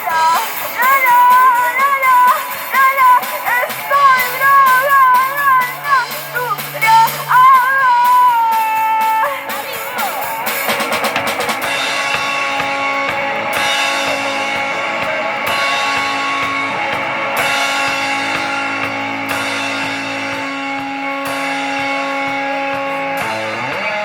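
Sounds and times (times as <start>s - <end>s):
drums and cymbals: 0.0s - 23.8s
held guitar chords: 0.0s - 24.0s
drum fill: 10.0s - 14.4s.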